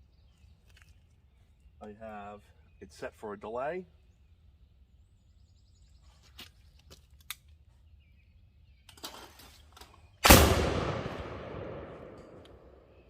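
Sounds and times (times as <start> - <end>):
shotgun shot with rolling echo: 10.2 - 13.0.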